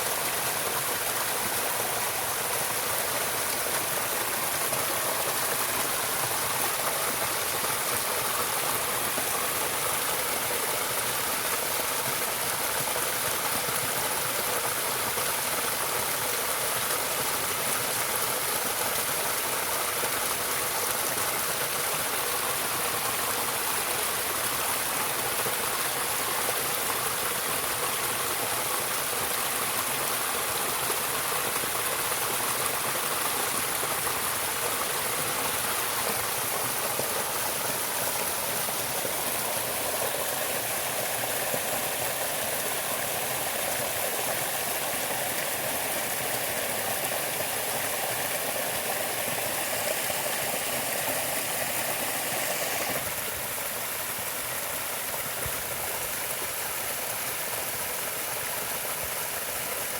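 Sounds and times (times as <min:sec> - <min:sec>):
water rushing: 0:00.0 - 0:59.9.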